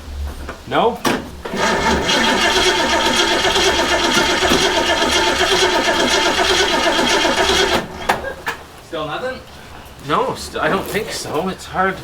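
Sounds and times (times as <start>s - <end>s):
engine cranking by starter: 1.1s - 8.8s.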